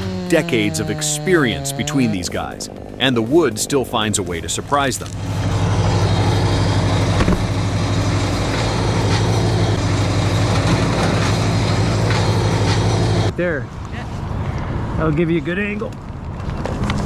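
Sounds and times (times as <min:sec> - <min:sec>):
heavy engine running: 0:00.0 - 0:13.4.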